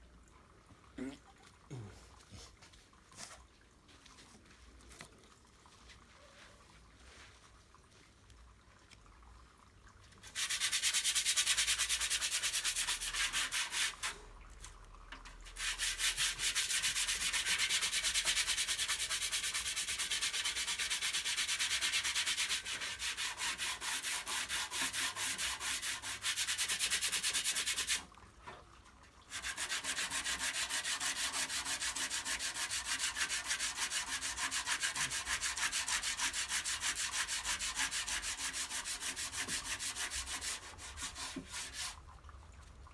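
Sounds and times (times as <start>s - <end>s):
sandpaper scraping: 15.6s - 28.0s, 29.4s - 42.0s.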